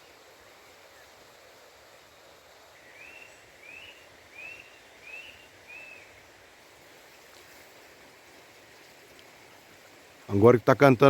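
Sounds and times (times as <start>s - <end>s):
faint background hiss: 0.0s - 11.0s
bird whistling: 2.8s - 6.1s.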